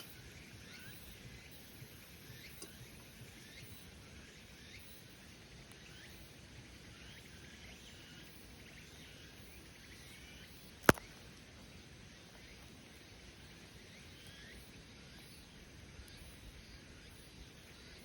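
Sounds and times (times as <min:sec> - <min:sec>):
small birds chirping: 0:00.0 - 0:18.0
sharp snap: 0:10.8 - 0:11.1.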